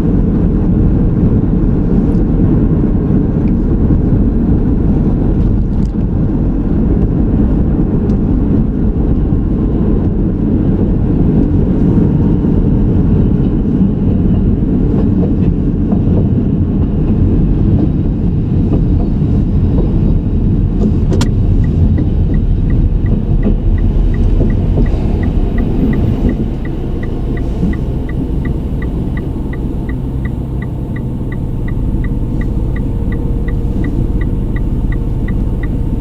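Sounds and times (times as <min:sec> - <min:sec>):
car engine and road rumble: 0:00.0 - 0:36.0
turn signal ticking: 0:19.6 - 0:36.0.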